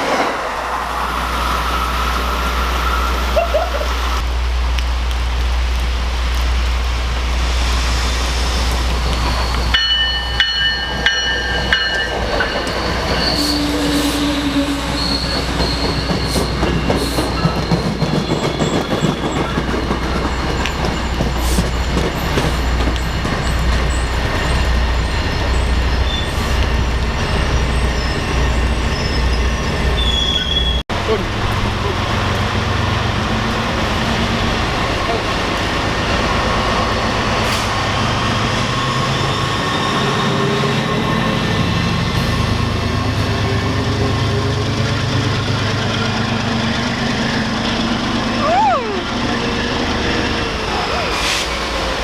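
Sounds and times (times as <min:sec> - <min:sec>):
train wheels rumbling on rails: 0:00.0 - 0:52.0
high metallic squeals: 0:07.7 - 0:19.4, 0:27.2 - 0:30.8.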